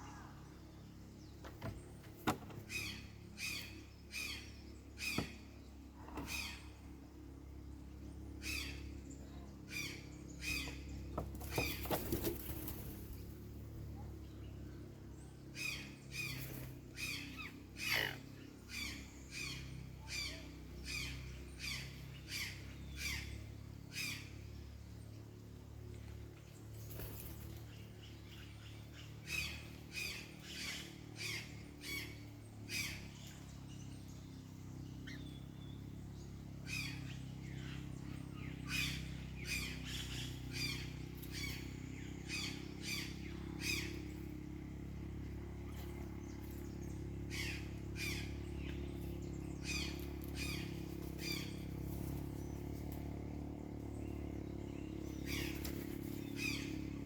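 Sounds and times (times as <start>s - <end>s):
birds squawking harshly: 15.6s - 24.3s, 36.7s - 44.2s, 55.1s - 57.0s.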